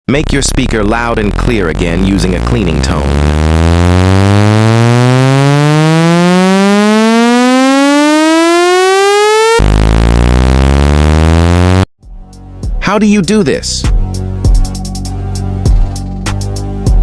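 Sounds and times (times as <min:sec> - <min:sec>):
buzzy electronic tone sweeping upward: 0:00.2 - 0:11.9.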